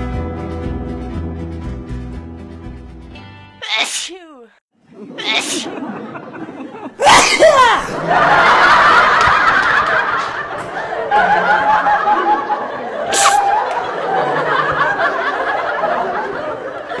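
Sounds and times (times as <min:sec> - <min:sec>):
people talking: 0:03.6 - 0:05.9
people laughing and giggling: 0:04.9 - 0:07.0, 0:07.6 - 0:17.0
sharp hiss-like burst: 0:13.1 - 0:13.5.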